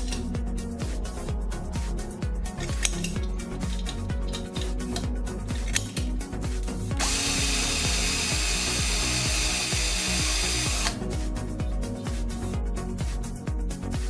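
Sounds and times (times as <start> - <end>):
background music with beat: 0.0 - 14.0
electric drill running: 6.9 - 11.0.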